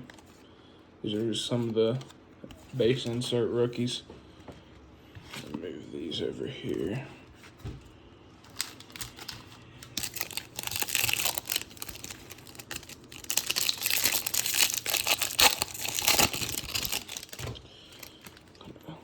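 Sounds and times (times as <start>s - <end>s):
foil wrapper tearing and crinkling: 8.5s - 18.6s.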